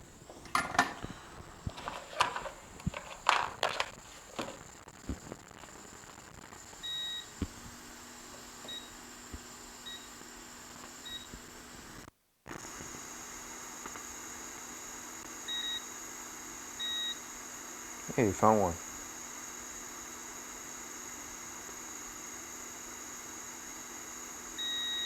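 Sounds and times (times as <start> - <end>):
faint steady hum: 0.0 - 12.1.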